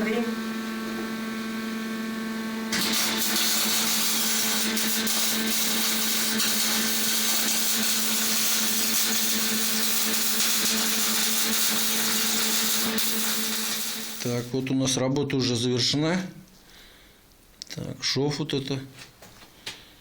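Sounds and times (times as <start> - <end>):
electrical hum: 0.0 - 20.0
welding arc crackling hiss: 2.7 - 14.6.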